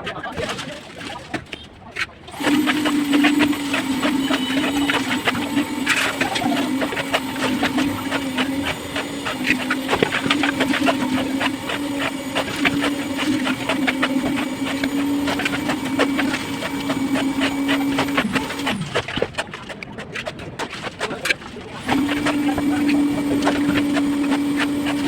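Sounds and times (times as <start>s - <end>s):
machine motor humming: 2.3s - 19.2s, 21.8s - 25.0s.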